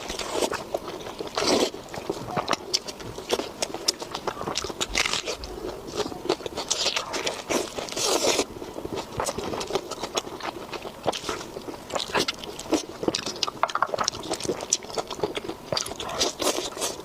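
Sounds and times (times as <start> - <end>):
person chewing crunchy food: 0.0 - 17.0.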